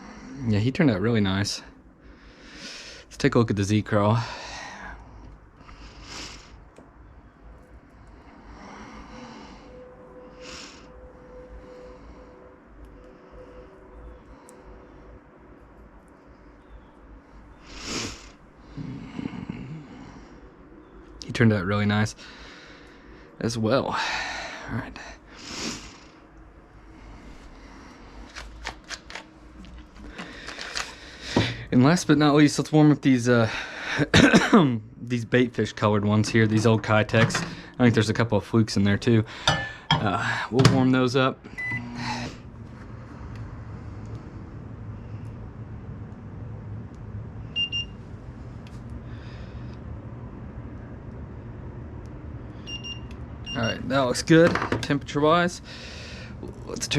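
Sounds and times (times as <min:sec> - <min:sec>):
microwave oven humming: 0:41.4 - 0:54.9.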